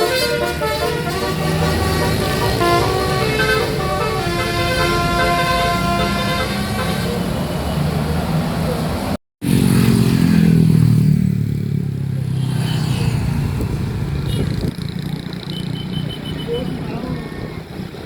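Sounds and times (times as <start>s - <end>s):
bus engine accelerating: 0.6s - 9.7s.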